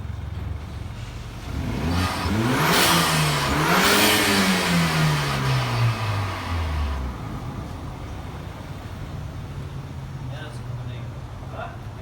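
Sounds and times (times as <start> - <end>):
car engine accelerating hard: 1.0 - 7.5.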